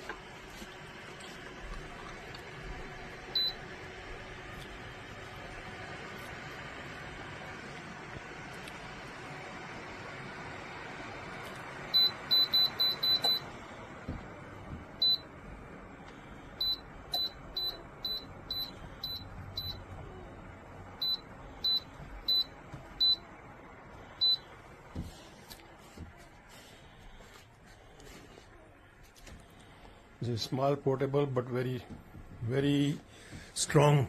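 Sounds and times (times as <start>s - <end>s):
fan hum: 0.0s - 34.0s.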